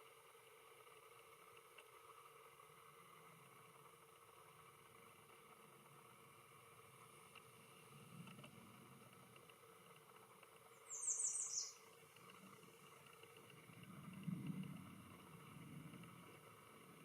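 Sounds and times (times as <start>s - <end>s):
faint low rumble: 0.0s - 17.0s
small bird chirping: 10.7s - 12.0s.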